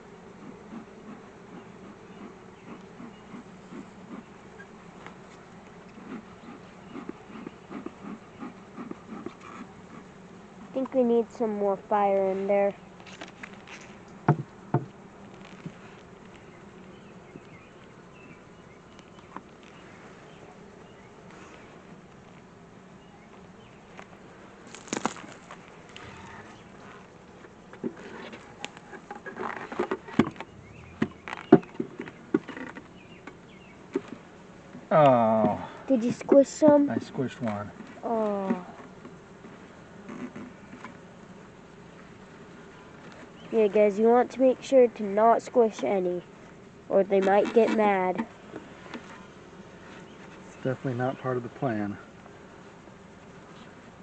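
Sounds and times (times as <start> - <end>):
bees buzzing: 0.0 - 54.0
wooden hive frames knocking: 0.3 - 11.9, 14.1 - 17.5, 28.6 - 41.2.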